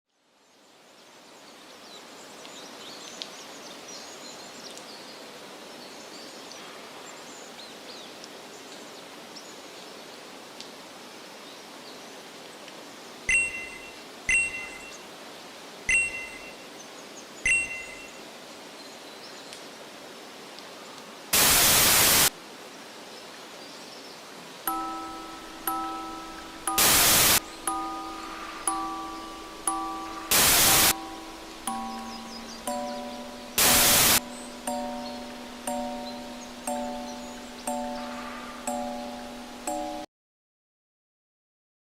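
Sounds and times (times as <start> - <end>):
outdoor ambience: 12.6 - 18.5, 20.4 - 22.7, 24.4 - 40.1
short ringing dings: 13.3 - 15.0, 15.9 - 16.6, 17.5 - 18.1, 24.7 - 36.9
faint bird chirps: 13.3 - 15.1, 15.9 - 18.3, 24.7 - 39.6
loud burst of static: 21.4 - 22.4, 26.6 - 29.1, 29.7 - 31.9, 33.6 - 34.3.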